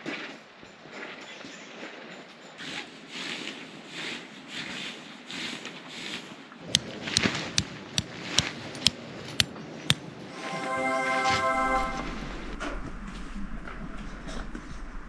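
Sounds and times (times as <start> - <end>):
background music: 10.2 - 12.6.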